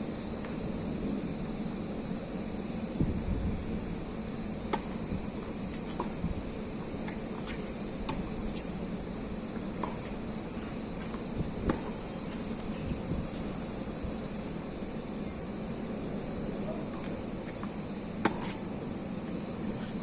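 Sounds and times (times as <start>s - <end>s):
wind noise: 2.9s - 4.1s, 5.0s - 6.6s, 11.1s - 14.8s
tennis ball strikes and bounces: 11.0s - 12.7s, 16.9s - 18.6s.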